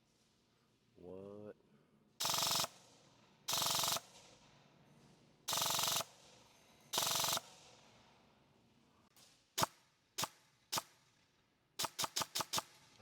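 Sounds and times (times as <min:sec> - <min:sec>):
airsoft rifle full-auto bursts: 0:02.2 - 0:02.8, 0:03.5 - 0:04.2, 0:05.5 - 0:06.2, 0:07.0 - 0:07.6, 0:11.8 - 0:12.9.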